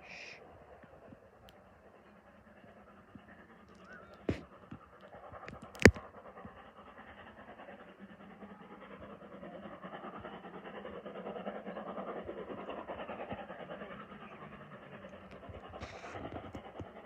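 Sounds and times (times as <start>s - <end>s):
steam train running: 6.2s - 17.0s.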